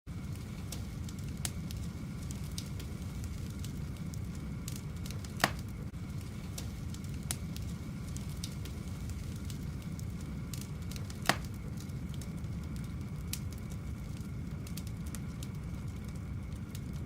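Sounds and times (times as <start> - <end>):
sharp crackles and pops: 0.1 - 17.0
loud pops: 5.1 - 5.8, 11.0 - 11.7.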